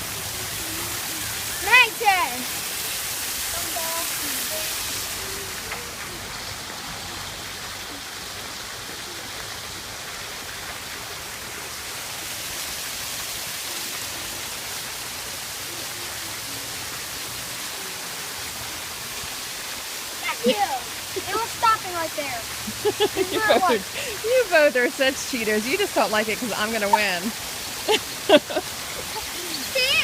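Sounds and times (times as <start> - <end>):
running water rushing: 0.0 - 30.0.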